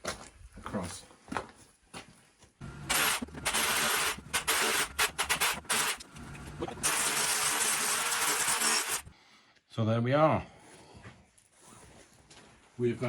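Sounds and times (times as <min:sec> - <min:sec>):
power tool cutting stone: 0:02.8 - 0:09.1.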